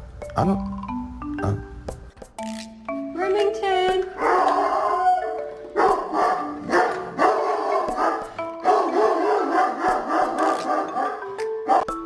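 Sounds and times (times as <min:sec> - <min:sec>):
background music: 0:00.0 - 0:12.0
dog vocalizing: 0:04.2 - 0:11.9.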